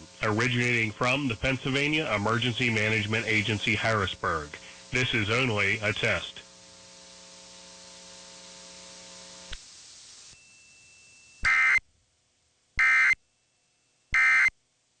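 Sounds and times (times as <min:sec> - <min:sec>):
faint steady hum: 0:00.0 - 0:15.0
shrill data tone bursts: 0:10.4 - 0:11.8, 0:12.8 - 0:13.2, 0:14.1 - 0:14.5.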